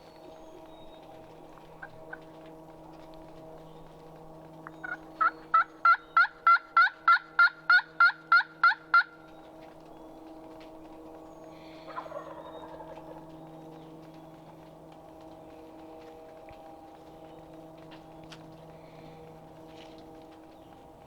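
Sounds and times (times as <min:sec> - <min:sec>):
turkey yelping: 0:04.8 - 0:09.1, 0:11.9 - 0:13.2.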